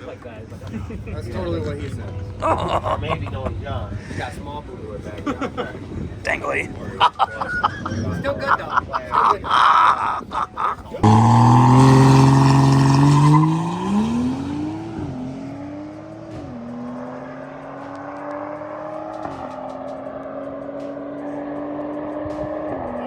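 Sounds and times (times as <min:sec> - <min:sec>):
car engine accelerating: 0:11.0 - 0:23.0.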